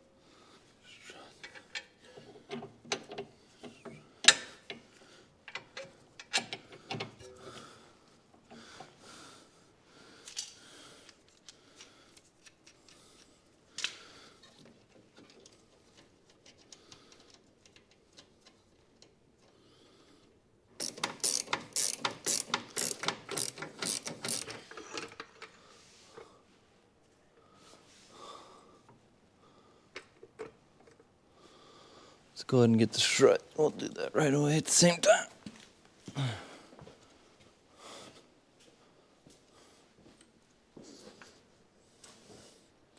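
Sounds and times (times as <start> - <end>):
ratchet wrench clicking: 20.8 - 25.2.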